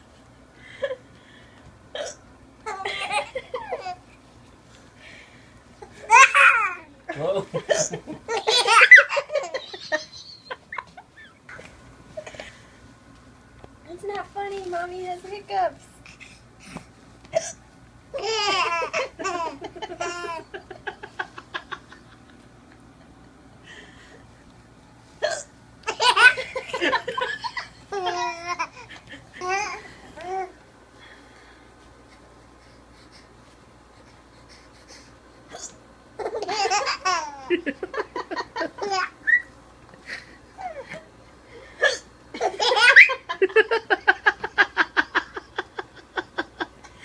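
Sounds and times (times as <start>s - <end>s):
baby laughing: 5.9s - 6.9s, 8.3s - 11.7s, 18.2s - 20.8s, 25.9s - 30.5s, 36.2s - 37.6s, 42.4s - 43.3s.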